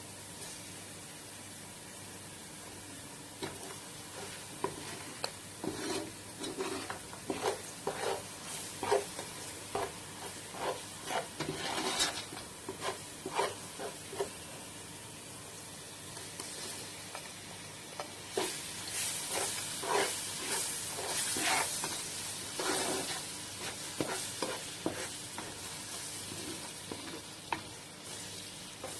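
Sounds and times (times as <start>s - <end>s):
vegetables sizzling in oil: 0.0s - 28.9s
spoon stirring and scraping: 3.4s - 14.4s, 18.0s - 28.2s.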